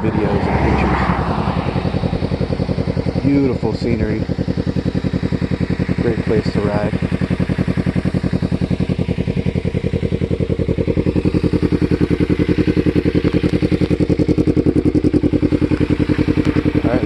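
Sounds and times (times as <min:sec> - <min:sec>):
motorcycle engine idling: 0:00.0 - 0:17.0.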